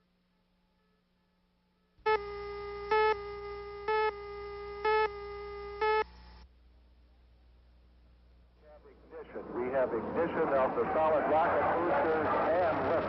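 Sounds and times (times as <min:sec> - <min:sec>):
low hum: 0:00.0 - 0:13.0
electronic beeps: 0:02.1 - 0:06.2.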